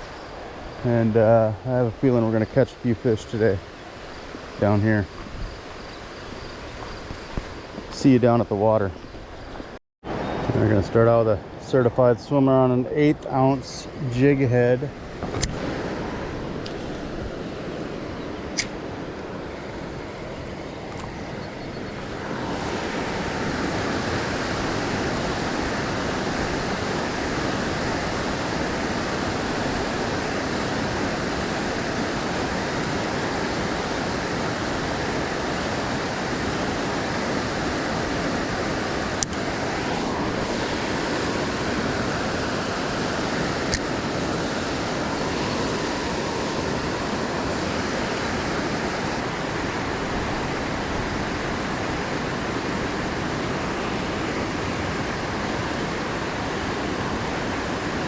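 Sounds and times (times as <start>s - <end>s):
river water rushing: 12.4s - 58.0s.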